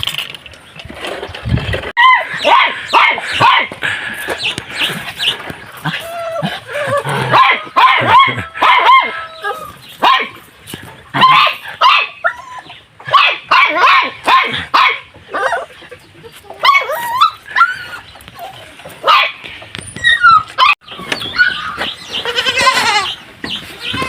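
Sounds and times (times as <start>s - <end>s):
dog barking and yipping: 2.0s - 3.8s, 7.1s - 10.4s, 11.1s - 15.8s, 16.5s - 19.4s, 20.0s - 22.0s.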